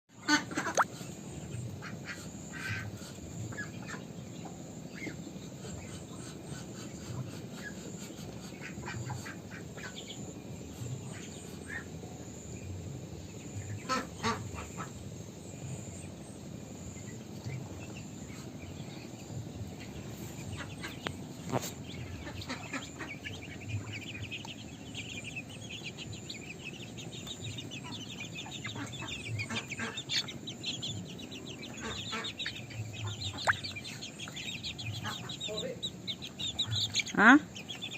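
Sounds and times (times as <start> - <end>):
ducks quacking: 0.2 - 1.2, 5.0 - 10.2, 13.6 - 15.0, 20.4 - 37.9
flock of ducks calling: 0.2 - 4.2, 4.9 - 12.0, 13.6 - 15.1, 20.0 - 37.9.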